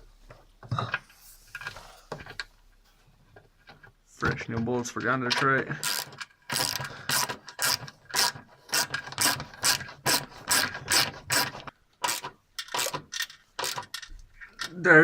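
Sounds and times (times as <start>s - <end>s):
ratchet wrench clicking: 5.8s - 14.1s.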